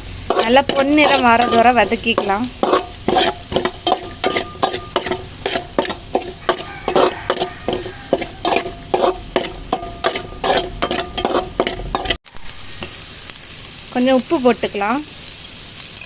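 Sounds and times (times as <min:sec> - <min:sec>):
spatula scraping a pan: 0:00.0 - 0:12.2
onions sizzling in oil: 0:00.0 - 0:16.0.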